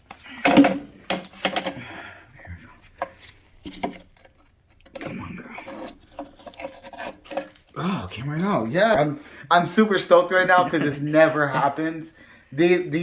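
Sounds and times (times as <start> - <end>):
metal clinks and knocks: 0.4 - 1.9
metal scraping: 2.8 - 9.3.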